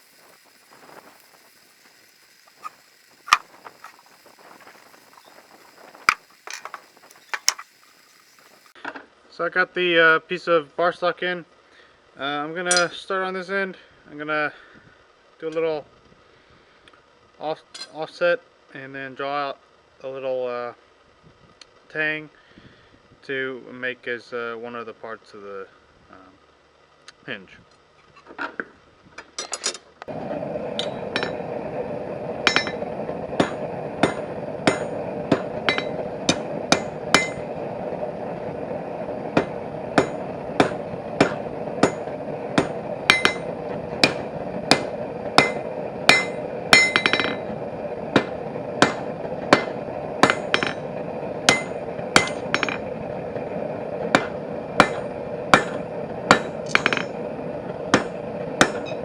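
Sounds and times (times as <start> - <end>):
steady hum: 0.0 - 29.3, 30.0 - 59.0
hammer ringing on anvil: 32.5 - 32.8, 33.4 - 36.0, 36.7 - 37.4, 42.6 - 47.4, 48.8 - 50.8, 51.5 - 52.8, 54.2 - 55.0, 55.6 - 57.2, 58.0 - 59.0.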